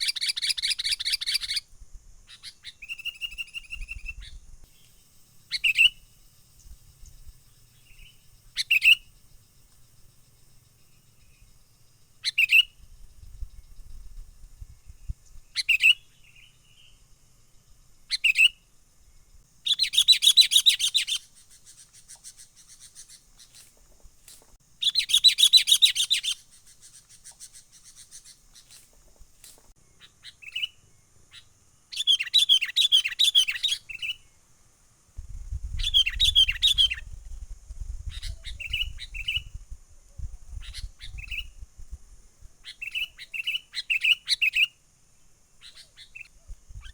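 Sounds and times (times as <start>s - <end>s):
birds rattling alarm calls: 5.4s - 6.5s, 7.8s - 9.2s, 19.7s - 29.7s, 35.8s - 37.1s.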